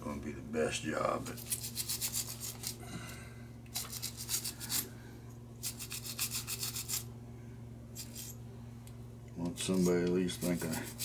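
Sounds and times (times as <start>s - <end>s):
steady low hum: 0.0s - 11.0s
rapid scrubbing strokes: 9.8s - 11.0s.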